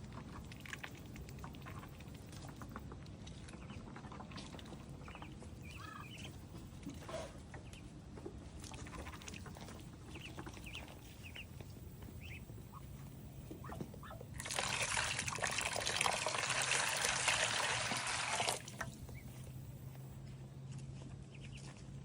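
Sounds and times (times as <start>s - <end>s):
duckling peeps: 3.4s - 7.9s, 8.8s - 14.8s, 21.3s - 21.8s
water splashing: 13.6s - 19.6s.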